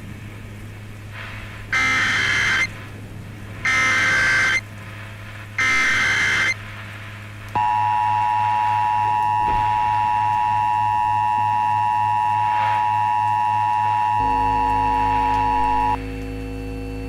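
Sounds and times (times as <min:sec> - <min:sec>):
low hum: 0:00.0 - 0:17.0
data burst tones: 0:01.7 - 0:02.8, 0:03.6 - 0:04.6, 0:05.6 - 0:06.6, 0:07.6 - 0:16.0
two-tone alert signal: 0:01.8 - 0:02.7, 0:03.6 - 0:04.6, 0:05.6 - 0:06.6, 0:07.6 - 0:16.0.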